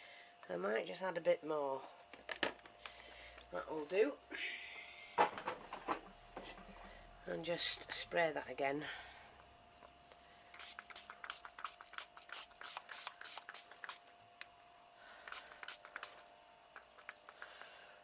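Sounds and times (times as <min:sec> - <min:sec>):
spray bottle spritzes: 0:10.6 - 0:14.1, 0:15.2 - 0:16.2.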